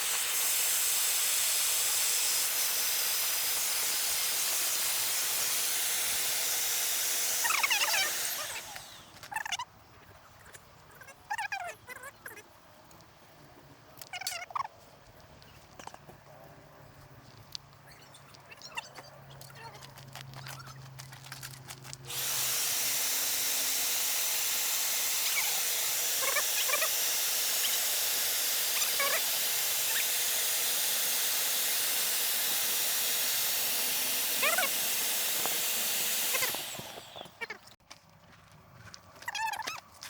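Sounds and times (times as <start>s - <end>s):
electric air blower hissing: 0.0s - 9.2s, 22.1s - 37.5s.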